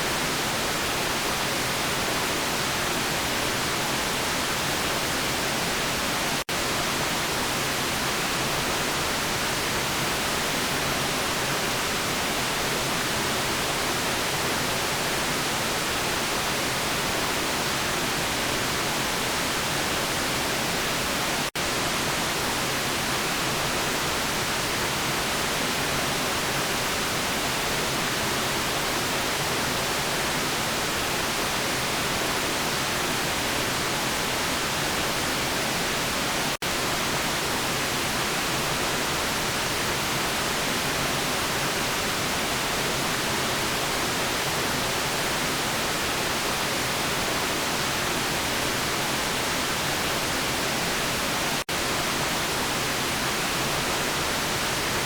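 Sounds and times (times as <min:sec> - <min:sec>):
steady white noise hiss: 0:00.0 - 0:55.0.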